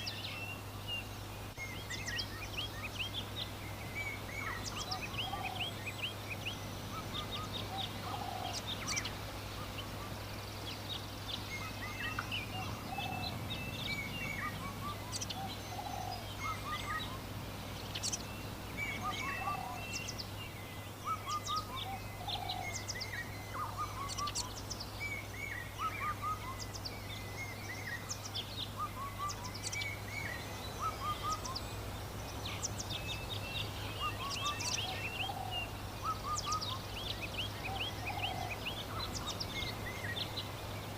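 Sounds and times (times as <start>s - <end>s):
birds chirping: 0.0s - 40.9s
low bird call: 11.4s - 40.5s.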